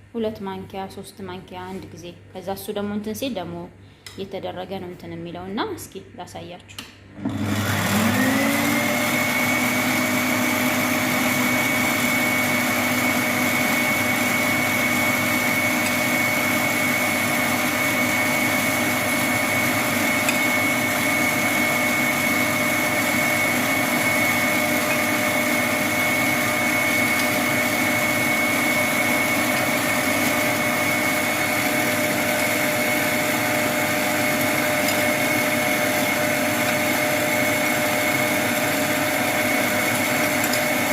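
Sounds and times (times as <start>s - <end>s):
electric mixer whining: 7.2s - 40.9s.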